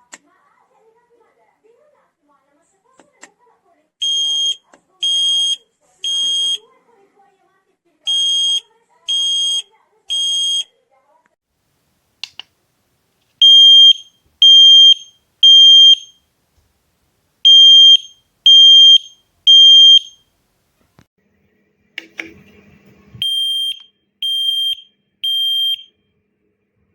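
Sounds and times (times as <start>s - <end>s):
smoke alarm beeping: 4.0s - 6.6s, 13.4s - 16.2s, 17.4s - 20.2s, 23.2s - 25.9s
click: 12.2s - 12.5s.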